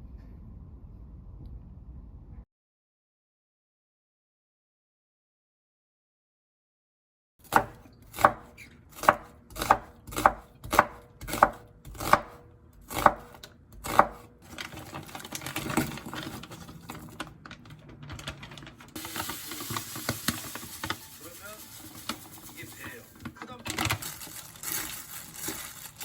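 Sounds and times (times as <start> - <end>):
clattering and rustling: 14.5 - 26.0.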